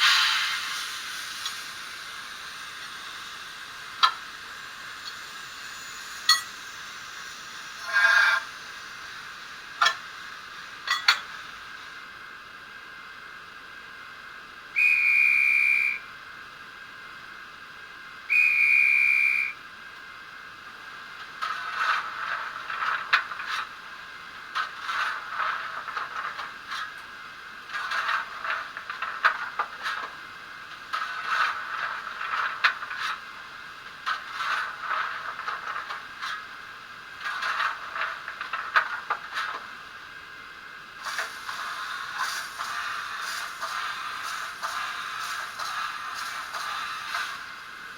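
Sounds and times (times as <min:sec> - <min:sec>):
hissing bursts with clatter: 0:00.0 - 0:12.2, 0:20.5 - 0:47.9
steady steam hiss: 0:00.0 - 0:47.9
steam whistle blast: 0:14.8 - 0:16.1, 0:18.3 - 0:19.6.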